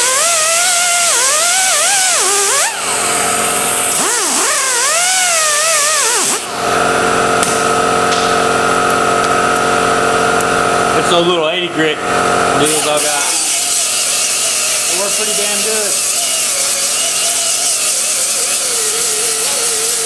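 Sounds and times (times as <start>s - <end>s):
angle grinder grinding metal: 0.0s - 7.1s, 12.6s - 20.0s.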